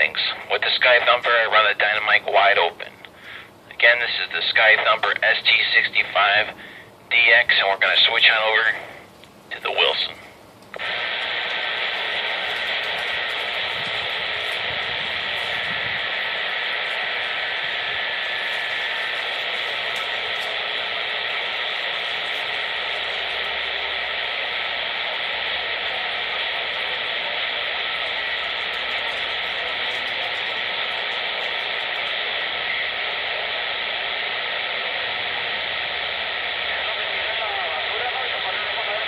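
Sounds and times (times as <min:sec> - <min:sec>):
radio static hiss: 0:00.0 - 0:39.0.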